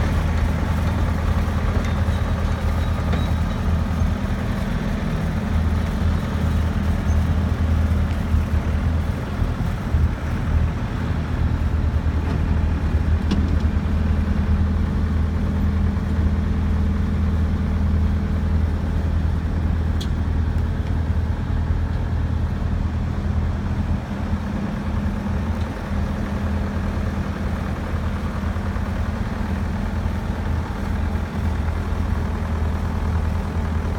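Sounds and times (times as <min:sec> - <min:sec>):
diesel engine running steadily: 0:00.0 - 0:33.9.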